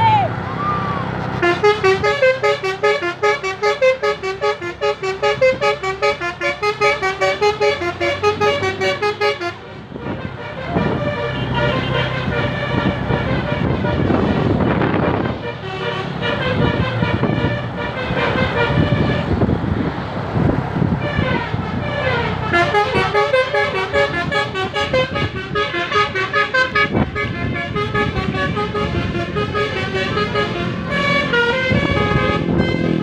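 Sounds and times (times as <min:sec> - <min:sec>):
road and engine noise: 0:00.0 - 0:33.0
musical horn playing a tune: 0:01.4 - 0:19.4, 0:21.0 - 0:33.0.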